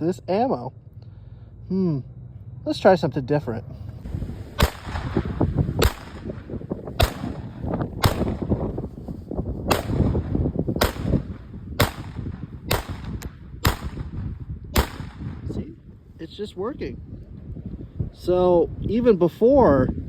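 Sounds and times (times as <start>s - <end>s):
pistol shots: 4.6s - 8.7s, 9.7s - 15.4s.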